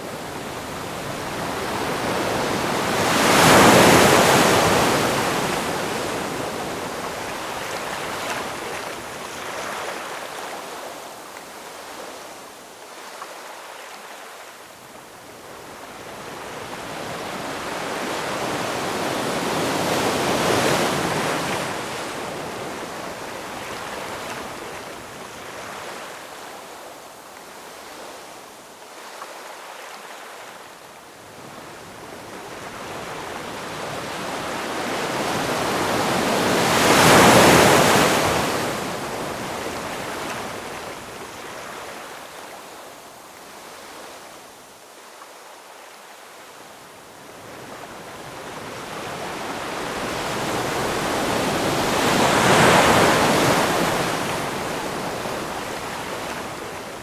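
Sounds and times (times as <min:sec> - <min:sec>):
waves breaking: 0:00.6 - 0:10.6, 0:33.8 - 0:42.6, 0:49.1 - 0:57.0.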